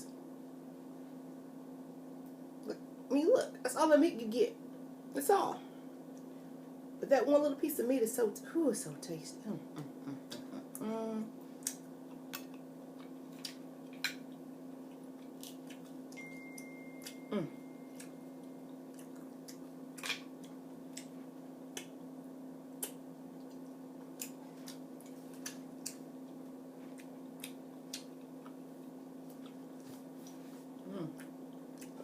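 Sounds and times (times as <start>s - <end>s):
steady low hum: 0.0s - 32.0s
person humming mm: 9.5s - 11.3s, 17.3s - 17.6s, 30.8s - 31.3s
person chewing with mouth clicks: 11.6s - 16.0s, 17.9s - 21.9s, 22.8s - 26.1s, 26.8s - 28.6s, 29.3s - 32.0s.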